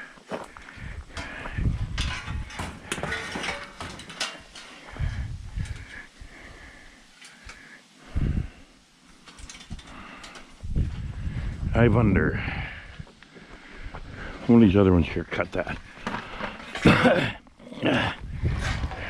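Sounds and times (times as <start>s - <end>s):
metallic rattling: 1.1s - 5.0s, 9.2s - 10.6s
knocks and thumps: 1.9s - 5.8s.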